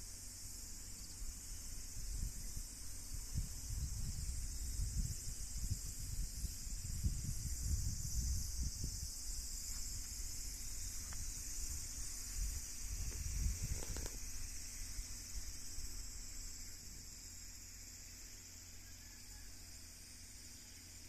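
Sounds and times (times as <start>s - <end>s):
low uneven rumble: 0.0s - 18.9s
high-pitched insect chorus: 0.0s - 21.0s.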